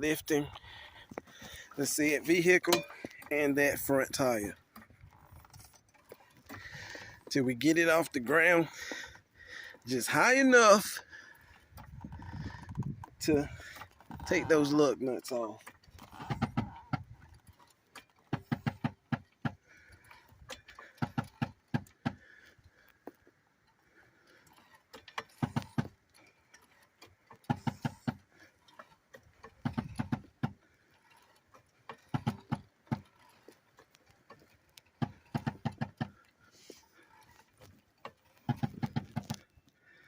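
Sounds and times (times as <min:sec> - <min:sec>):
car jack clicking: 0:02.6 - 0:03.9, 0:15.6 - 0:39.7.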